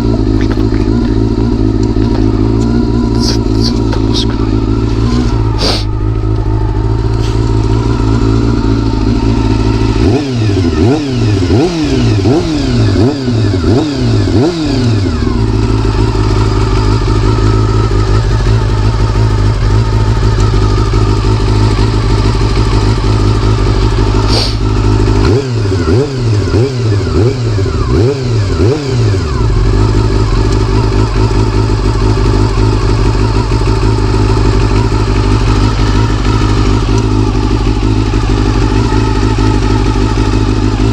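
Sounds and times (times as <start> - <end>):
quick throttle blips: 0.0 - 27.4
motorcycle engine idling: 0.0 - 40.9.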